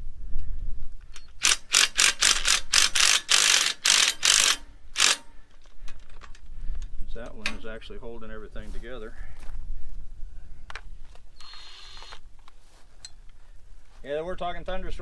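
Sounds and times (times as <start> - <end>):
ratchet wrench clicking: 1.1 - 5.4, 11.4 - 12.2.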